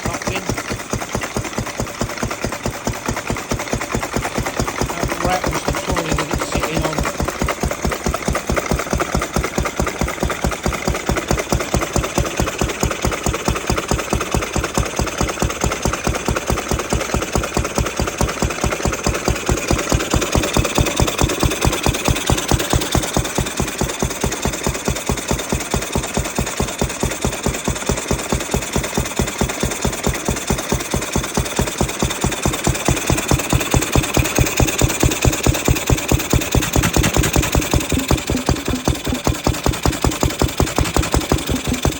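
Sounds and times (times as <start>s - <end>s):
stationary petrol engine running: 0.0s - 41.9s
trolley rattling: 36.1s - 41.9s.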